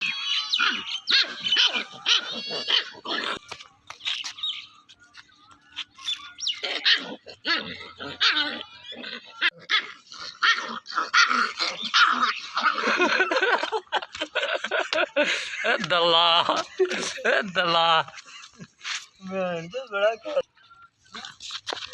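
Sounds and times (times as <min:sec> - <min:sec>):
puppy yipping and barking: 0:00.0 - 0:04.4, 0:06.0 - 0:13.0.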